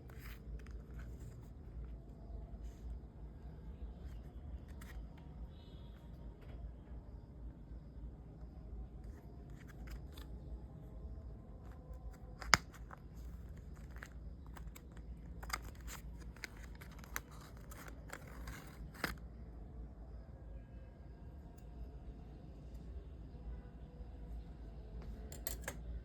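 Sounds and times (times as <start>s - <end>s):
packaging clicks: 11.7s - 19.2s
packaging rustling: 11.7s - 19.2s.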